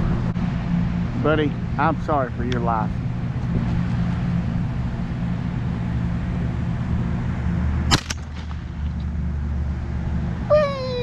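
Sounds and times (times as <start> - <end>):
shotgun shot: 7.9 - 8.8
faint cracks: 7.9 - 9.1.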